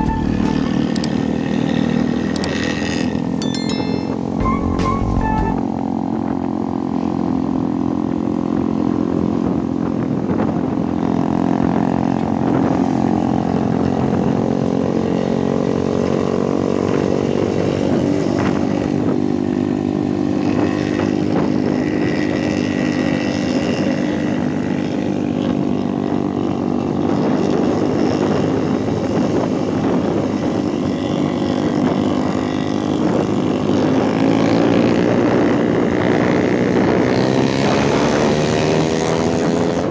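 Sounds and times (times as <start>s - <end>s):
bus diesel engine droning: 0.0s - 3.2s.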